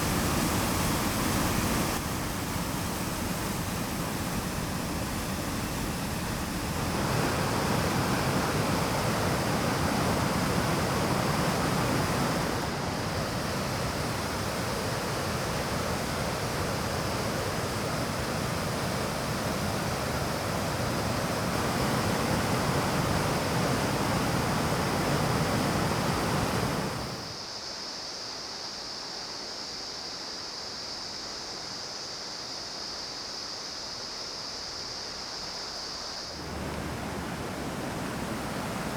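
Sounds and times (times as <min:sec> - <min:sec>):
stream and waterfall rushing: 0:00.0 - 0:27.4, 0:36.2 - 0:38.9
steady high hiss: 0:00.0 - 0:38.9.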